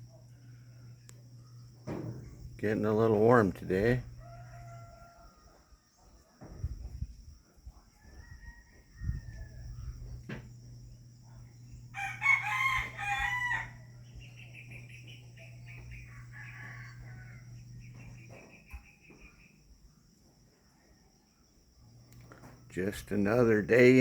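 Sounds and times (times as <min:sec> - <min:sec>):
low steady hum: 0:00.0 - 0:07.8, 0:08.8 - 0:20.2
rooster crowing: 0:03.7 - 0:06.0, 0:07.8 - 0:18.9
chicken calls: 0:11.6 - 0:19.5.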